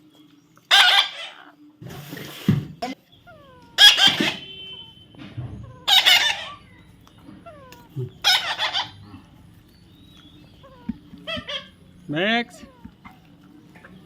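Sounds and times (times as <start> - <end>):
parrot screeching: 0.7 - 1.6, 3.1 - 9.4, 10.5 - 11.8
parrot falling whistles: 3.7 - 6.7.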